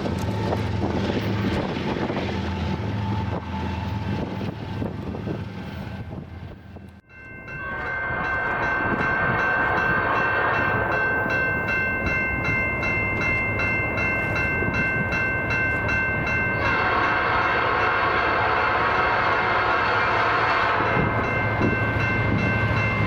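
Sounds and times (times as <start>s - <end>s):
passing train rumble: 0.0s - 23.0s
locomotive air horn chord: 7.6s - 11.2s, 16.6s - 21.2s.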